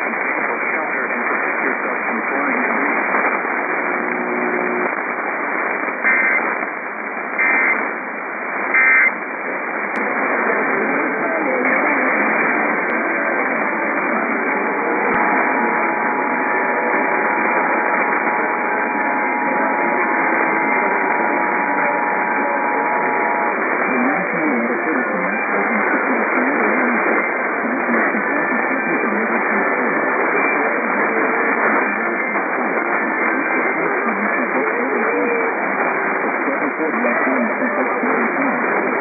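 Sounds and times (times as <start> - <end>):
radio static hiss: 0.0 - 39.0
two-tone attention signal: 8.8 - 9.1.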